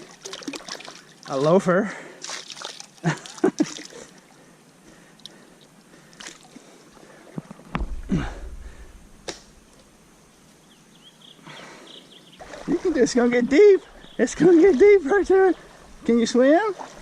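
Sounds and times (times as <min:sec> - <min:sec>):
small water splashes: 0:00.0 - 0:04.4, 0:06.0 - 0:07.3, 0:12.4 - 0:17.0
creek water sloshing: 0:00.0 - 0:07.5, 0:12.4 - 0:17.0.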